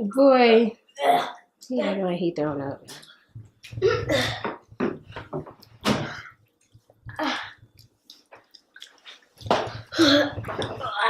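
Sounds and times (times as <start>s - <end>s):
person vomiting and gagging: 3.7s - 4.7s, 7.1s - 7.8s, 9.6s - 11.0s.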